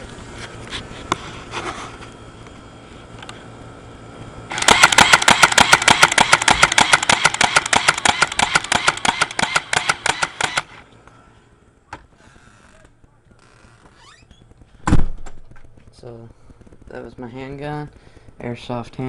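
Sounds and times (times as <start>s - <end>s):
airsoft gun automatic burst: 4.5s - 10.8s.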